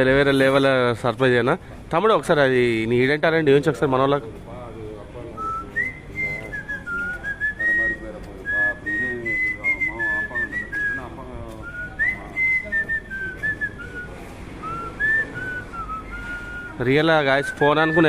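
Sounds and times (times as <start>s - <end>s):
people talking softly: 3.5s - 18.0s
man whistling a melody: 5.3s - 18.0s.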